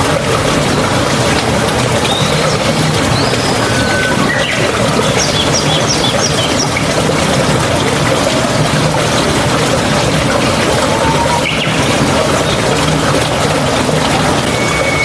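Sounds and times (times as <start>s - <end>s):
flowing water: 0.0s - 15.0s
bird calling short high notes: 14.5s - 15.0s.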